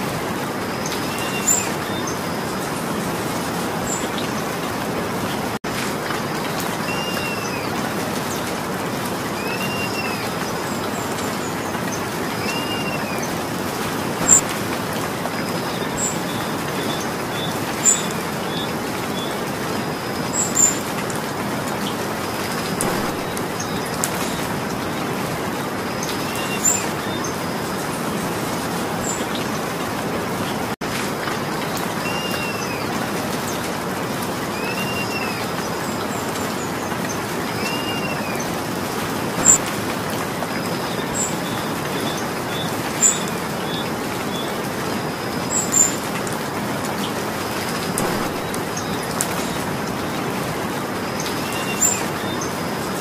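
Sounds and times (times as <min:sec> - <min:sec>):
steady rainfall: 0:00.0 - 0:53.0
bird chirping: 0:22.4 - 0:24.5, 0:48.0 - 0:49.7.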